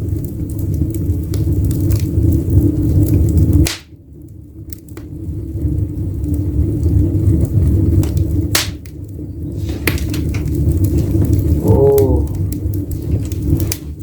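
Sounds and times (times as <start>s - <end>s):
fire crackling: 0.0s - 14.0s
fire roaring in fireplace: 0.0s - 14.0s.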